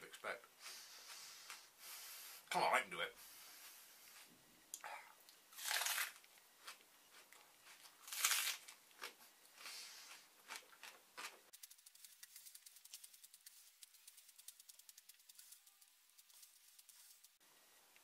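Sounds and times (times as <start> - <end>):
person crunching raw onion: 5.5 - 17.2
faint rapid clicking: 11.5 - 17.4.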